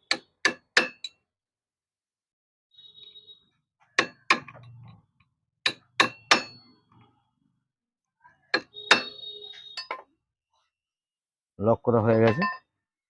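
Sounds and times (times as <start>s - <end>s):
hammer strikes on metal: 0.0s - 1.1s, 4.0s - 4.7s, 5.6s - 6.7s, 8.5s - 9.2s.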